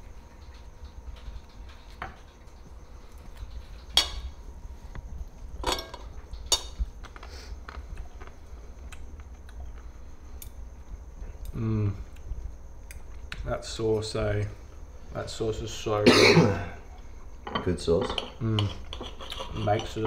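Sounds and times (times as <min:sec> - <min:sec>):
cutlery clinking against plates: 0:05.6 - 0:06.8, 0:17.5 - 0:20.0.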